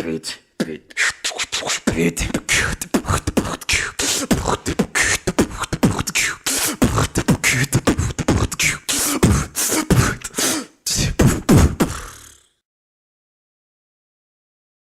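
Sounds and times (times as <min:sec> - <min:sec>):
person beatboxing: 0:00.0 - 0:12.5.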